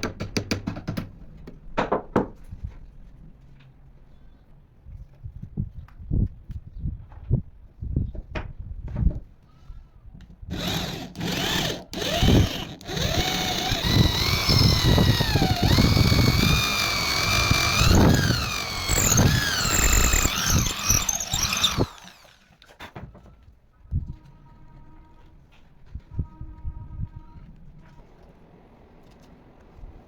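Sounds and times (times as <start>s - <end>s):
power tool whining: 10.5s - 22.5s.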